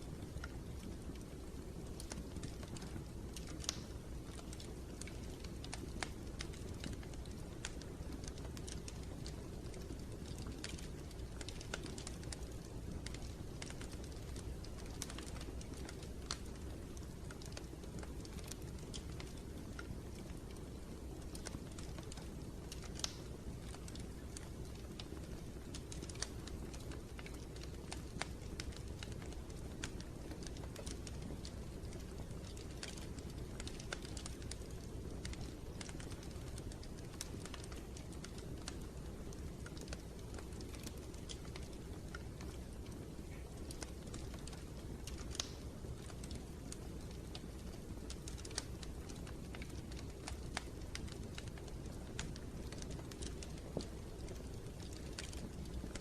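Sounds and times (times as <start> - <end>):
low rumble of flames: 0.0 - 56.0
wood fire crackling and popping: 0.0 - 56.0.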